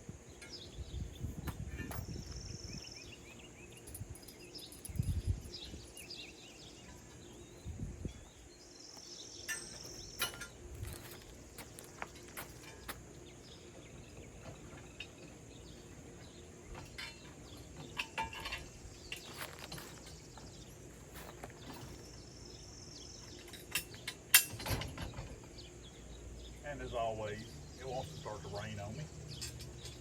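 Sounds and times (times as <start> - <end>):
insects chirring: 0.0 - 30.0
clicks and knocks of handled parts: 9.5 - 13.0, 16.7 - 22.1.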